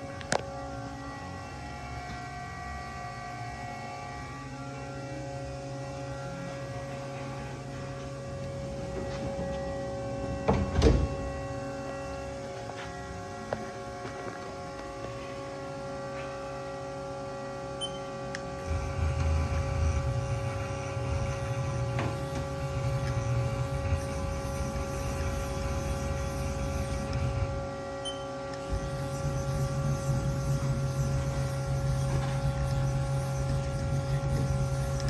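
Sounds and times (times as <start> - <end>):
heavy low drone: 0.0 - 17.8, 18.4 - 28.0
lathe machine hum: 0.0 - 35.0.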